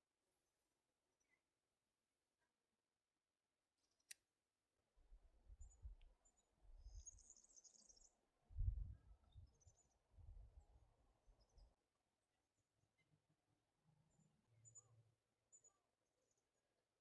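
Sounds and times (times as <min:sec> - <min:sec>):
low rumbling wind gusts: 0:08.6 - 0:09.2.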